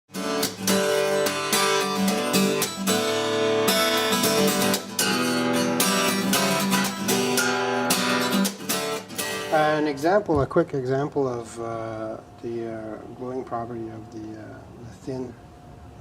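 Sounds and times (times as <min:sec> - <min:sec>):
strummed acoustic guitar: 0:00.1 - 0:10.0.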